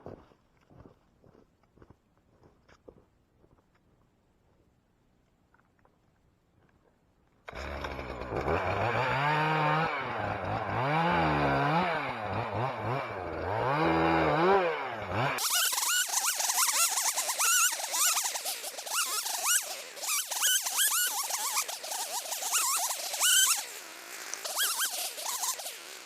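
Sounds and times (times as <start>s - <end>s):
chainsaw revving: 7.5s - 26.0s
high scratchy wavering tones: 15.4s - 26.0s.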